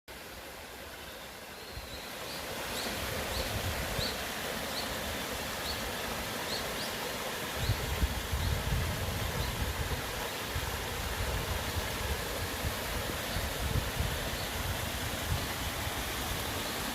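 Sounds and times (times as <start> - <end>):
mountain stream rushing: 0.1 - 16.9.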